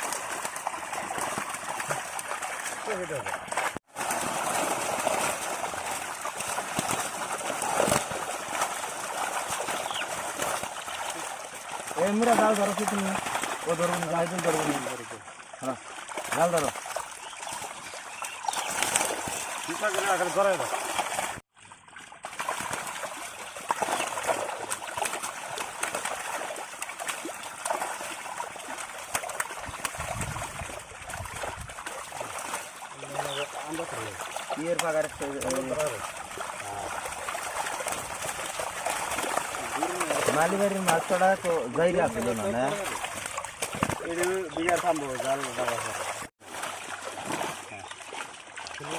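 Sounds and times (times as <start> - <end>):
water splashing and sloshing: 0.0 - 48.9.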